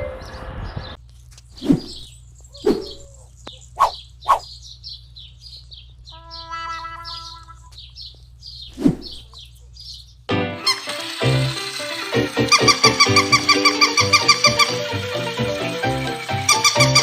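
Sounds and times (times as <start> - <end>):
small bird chirping: 0.2 - 10.3.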